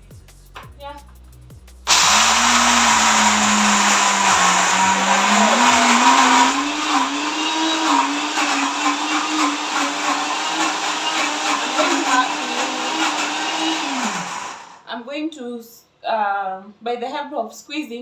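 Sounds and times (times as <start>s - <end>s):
blender grinding nuts: 1.9s - 14.8s.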